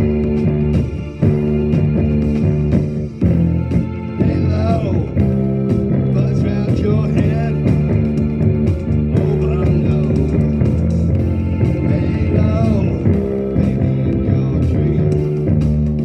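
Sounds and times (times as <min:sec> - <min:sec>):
rock band playing live: 0:00.0 - 0:16.0.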